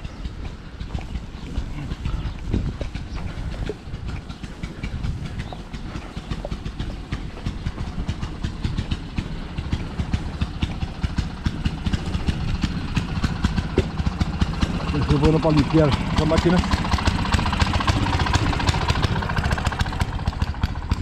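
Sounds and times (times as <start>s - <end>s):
wind on microphone: 0.0s - 14.4s.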